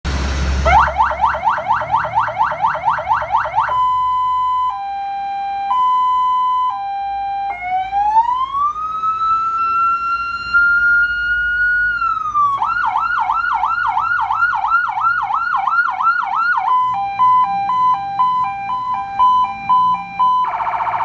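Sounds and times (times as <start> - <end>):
electronic siren cycling tones: 0.6 - 21.0.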